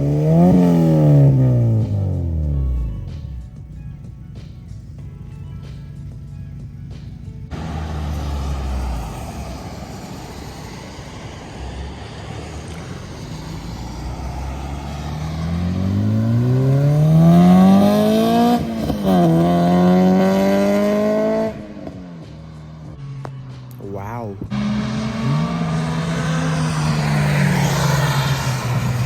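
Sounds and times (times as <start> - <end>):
car engine accelerating hard: 0.0 - 3.6, 4.4 - 23.7, 24.4 - 29.0.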